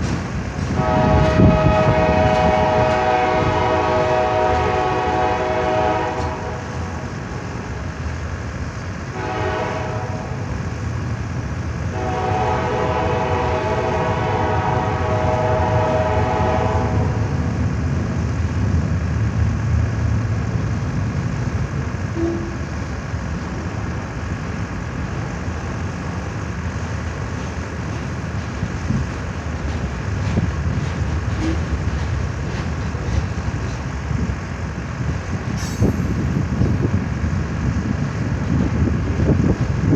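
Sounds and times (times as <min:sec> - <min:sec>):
train rumbling past: 0:00.0 - 0:39.9
train air horn blasts: 0:00.7 - 0:07.5, 0:09.1 - 0:10.5, 0:11.9 - 0:17.6, 0:22.1 - 0:22.7, 0:31.4 - 0:31.7.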